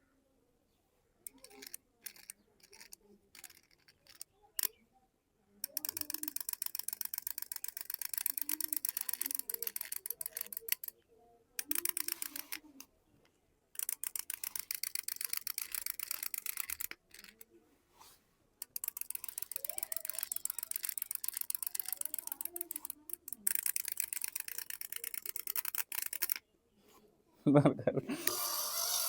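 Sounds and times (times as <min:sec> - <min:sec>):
plastic gear ratcheting clicks: 0:01.2 - 0:04.8, 0:05.6 - 0:11.0, 0:11.6 - 0:12.9, 0:13.7 - 0:17.5, 0:18.6 - 0:26.4, 0:28.1 - 0:29.0.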